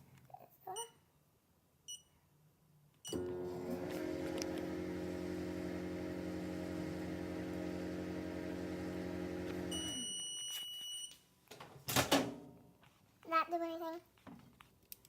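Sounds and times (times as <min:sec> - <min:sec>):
microwave beep: 0:03.0 - 0:11.2
microwave oven humming: 0:03.1 - 0:10.2.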